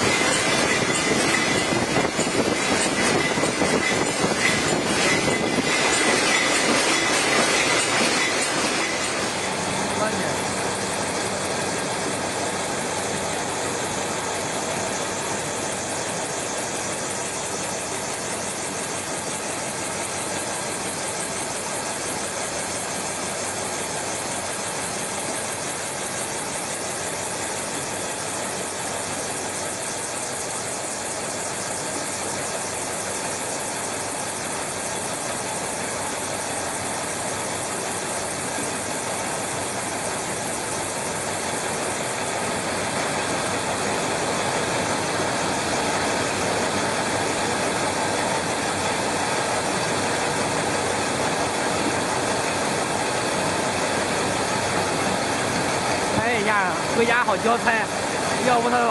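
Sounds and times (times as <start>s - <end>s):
vacuum leak tester running: 0.0s - 58.9s.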